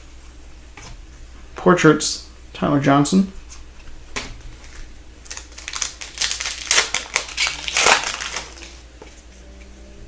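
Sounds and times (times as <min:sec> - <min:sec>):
wrapper crinkling and tearing: 0:04.6 - 0:08.8.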